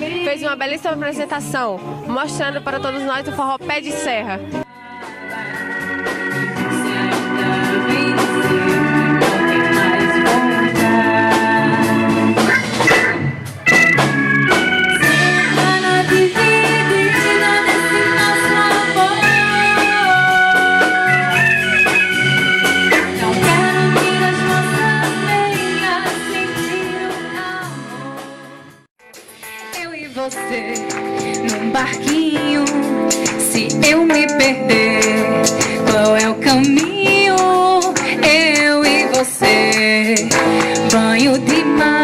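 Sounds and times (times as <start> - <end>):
reedy chords: 5.4 - 27.9, 29.5 - 42.0
steady percussion beat: 29.1 - 41.9.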